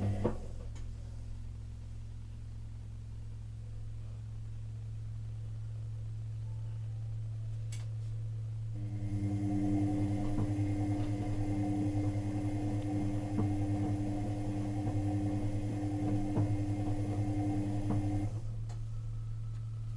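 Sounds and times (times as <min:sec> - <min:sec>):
washing machine motor humming: 0:00.0 - 0:01.0, 0:08.8 - 0:18.9
drum knocking: 0:13.0 - 0:18.2.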